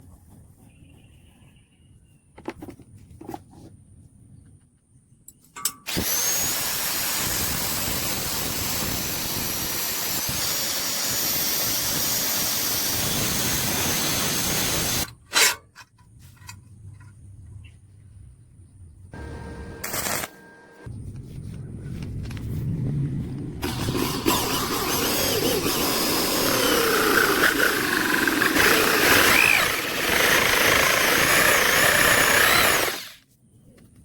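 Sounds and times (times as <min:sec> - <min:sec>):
clicks and knocks of handling metal: 0:05.3 - 0:05.9, 0:15.1 - 0:17.2
metalworking tool running: 0:05.9 - 0:15.1, 0:19.2 - 0:20.9, 0:23.6 - 0:33.2.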